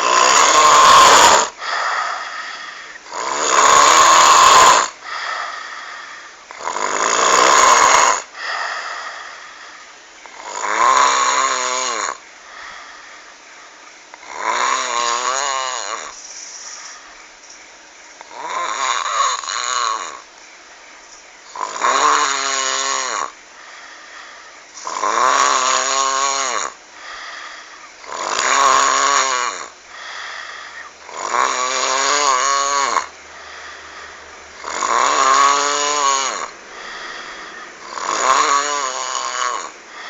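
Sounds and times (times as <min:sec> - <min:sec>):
person snoring loudly: 0:00.0 - 0:05.6, 0:06.5 - 0:09.6, 0:10.2 - 0:12.2, 0:14.1 - 0:16.2, 0:18.3 - 0:20.3, 0:21.5 - 0:23.4, 0:24.8 - 0:40.0
quiet breathing: 0:01.5 - 0:03.2, 0:04.9 - 0:06.7, 0:08.2 - 0:10.5, 0:12.1 - 0:14.2, 0:15.8 - 0:18.4, 0:23.2 - 0:25.0, 0:26.6 - 0:28.1, 0:29.6 - 0:31.2, 0:33.0 - 0:34.8, 0:35.8 - 0:40.0.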